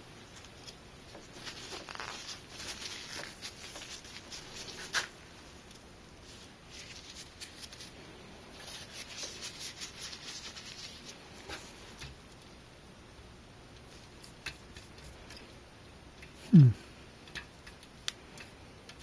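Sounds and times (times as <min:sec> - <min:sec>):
hands rubbing and scraping: 0:00.3 - 0:05.2, 0:08.6 - 0:12.0.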